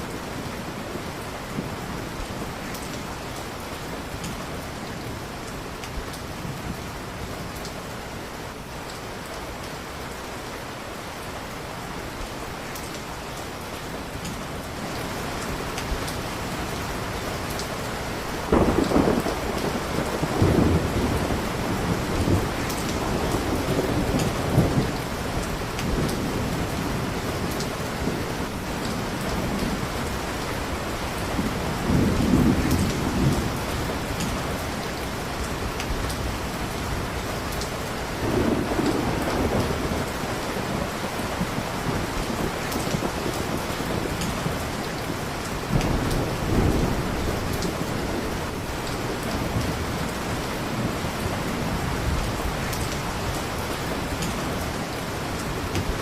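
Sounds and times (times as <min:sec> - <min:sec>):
heavy rain: 0:00.0 - 0:56.0
low thunder rumbles: 0:18.4 - 0:37.3, 0:38.1 - 0:55.0.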